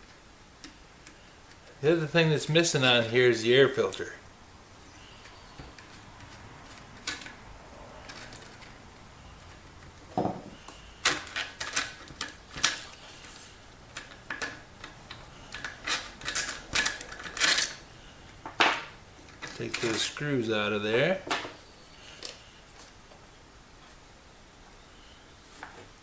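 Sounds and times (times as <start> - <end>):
hand tools and parts clicking: 5.2 - 8.8, 9.4 - 20.2.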